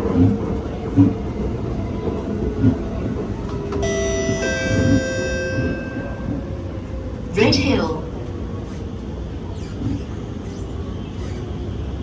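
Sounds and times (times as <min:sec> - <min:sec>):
metro train running: 0:00.0 - 0:12.0
high ringing tone: 0:03.8 - 0:06.9.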